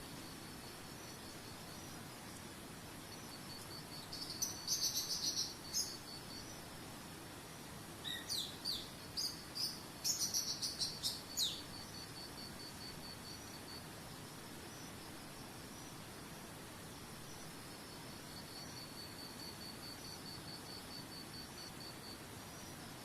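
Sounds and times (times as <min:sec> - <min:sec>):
soft even hiss: 0:00.0 - 0:23.0
pulsing insect trill: 0:00.2 - 0:02.4, 0:03.0 - 0:06.6, 0:08.0 - 0:22.8
songbirds chirping and whistling: 0:03.1 - 0:06.7, 0:08.0 - 0:12.1.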